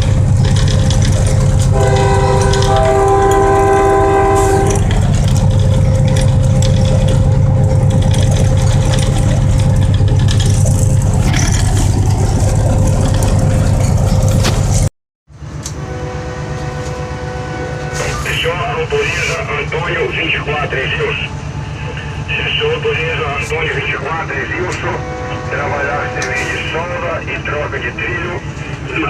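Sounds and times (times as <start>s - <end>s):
diesel locomotive engine drone: 0.0s - 29.0s
locomotive horn: 1.0s - 11.2s, 15.6s - 20.3s, 20.9s - 28.0s.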